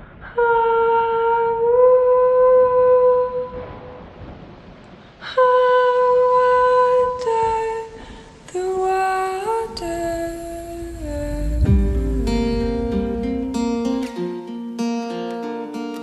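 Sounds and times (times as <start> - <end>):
slow wordless melody: 5.4 - 16.0.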